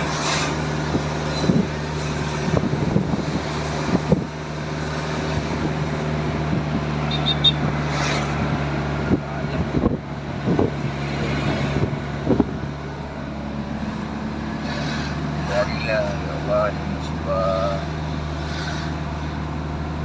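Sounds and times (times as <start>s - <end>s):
wind noise on microphone: 0.0s - 4.5s, 5.2s - 12.8s.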